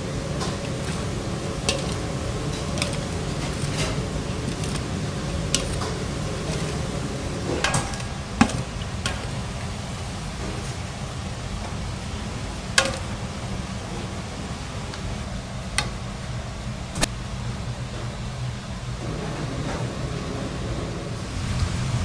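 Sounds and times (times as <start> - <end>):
dishes and utensils clinking: 0.0 - 16.1
kitchen low hum: 0.0 - 22.0.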